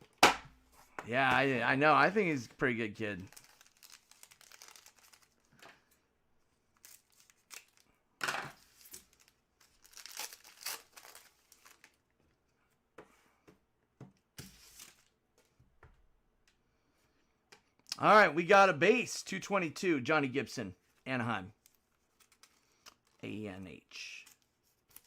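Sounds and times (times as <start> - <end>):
cards rustling: 1.3 - 5.7, 6.8 - 7.8, 8.6 - 12.0, 20.8 - 23.4
wrapper tearing and crinkling: 3.2 - 5.4, 6.8 - 7.9, 8.6 - 12.0.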